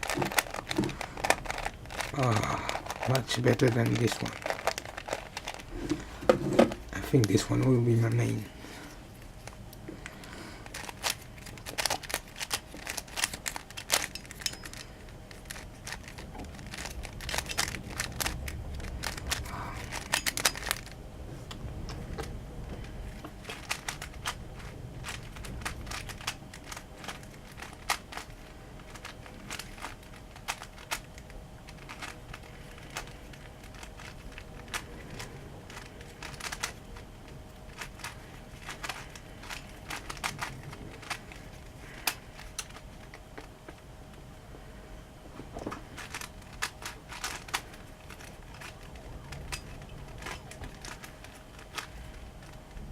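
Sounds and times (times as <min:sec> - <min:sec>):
plastic puzzle pieces clicking: 0:00.0 - 0:05.7, 0:10.6 - 0:21.0, 0:23.1 - 0:36.8, 0:37.7 - 0:43.5, 0:46.0 - 0:52.7.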